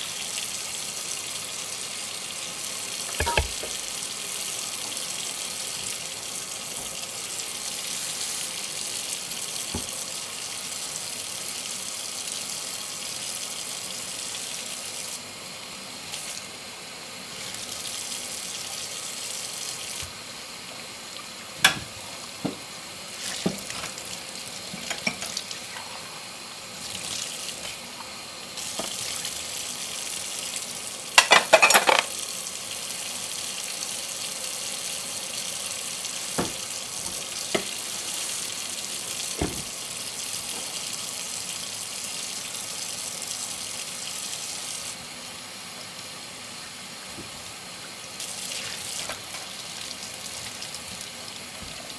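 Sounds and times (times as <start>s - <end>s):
tap water running into sink: 0.3s - 45.1s, 45.7s - 51.9s
crockery clinking: 3.1s - 3.8s, 31.2s - 32.1s
dishes clattering: 3.1s - 3.9s, 21.6s - 22.7s, 24.7s - 26.0s, 31.2s - 32.1s, 36.4s - 37.8s, 39.4s - 39.8s.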